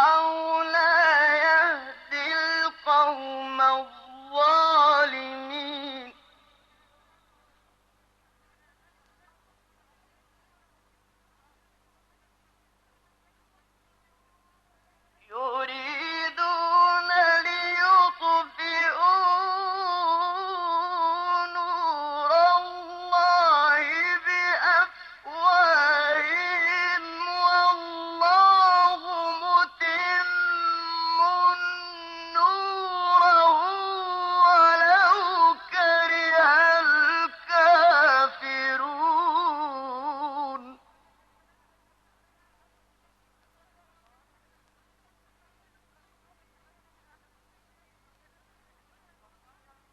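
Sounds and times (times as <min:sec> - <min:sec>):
man chanting recitation: 0:00.0 - 0:07.3, 0:15.2 - 0:40.9.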